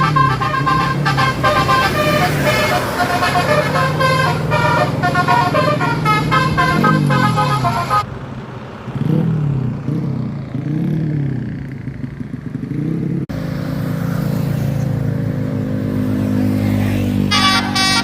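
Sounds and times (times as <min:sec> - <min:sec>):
low engine drone: 0:00.0 - 0:08.5
vehicle engine revving: 0:00.0 - 0:18.0.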